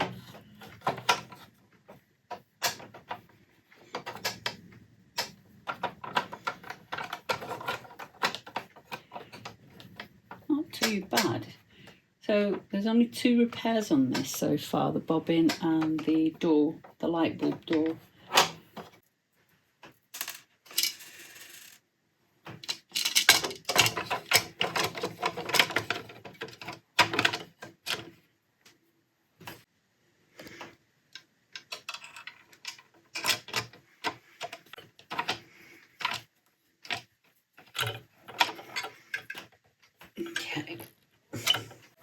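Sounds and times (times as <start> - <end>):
plastic and metal parts clattering: 0.0 - 19.0, 22.5 - 28.3, 30.4 - 42.0.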